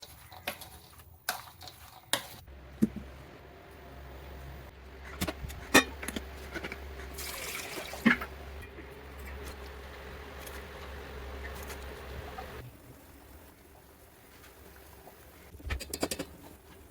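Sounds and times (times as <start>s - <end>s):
steady low hum: 2.5s - 15.6s.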